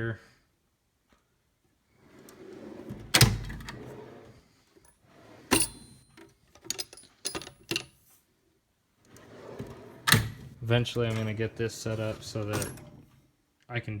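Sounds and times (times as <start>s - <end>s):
metal drawer sliding rumble: 2.0s - 4.4s, 5.1s - 6.0s, 9.1s - 13.2s
loose metal tools rattling: 5.5s - 8.0s.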